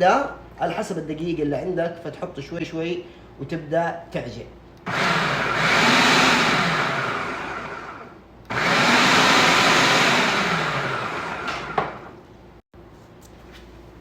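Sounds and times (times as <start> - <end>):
food processor running: 4.9 - 12.2
food processor stopping click: 8.5 - 12.1.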